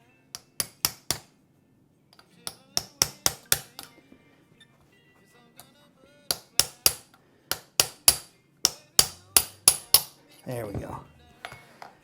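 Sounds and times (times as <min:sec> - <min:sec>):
hammer striking metal: 0:00.4 - 0:01.3, 0:02.2 - 0:03.9, 0:06.3 - 0:10.2.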